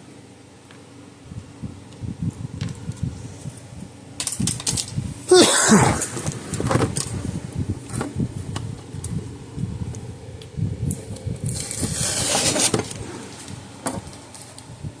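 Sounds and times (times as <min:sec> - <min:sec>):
loud scrape with squeal: 0:11.5 - 0:13.0.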